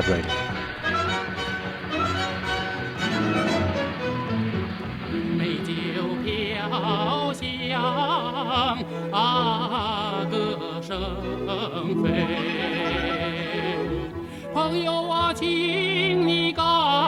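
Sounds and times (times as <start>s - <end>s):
sustained accompaniment: 0.0s - 14.4s
operatic singing: 0.0s - 17.0s.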